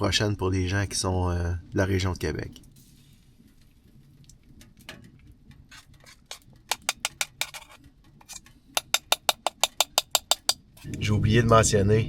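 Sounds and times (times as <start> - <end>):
utensil clinking against dish: 8.8 - 10.9.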